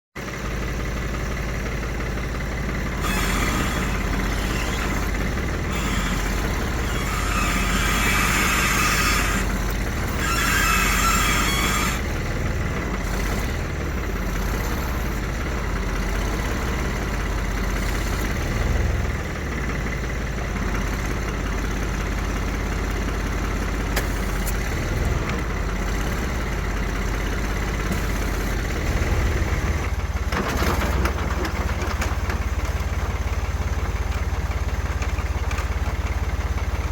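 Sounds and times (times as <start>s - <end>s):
tractor engine running: 0.2s - 36.9s
stump grinder hissing and whirring: 1.6s - 19.6s, 20.7s - 30.0s.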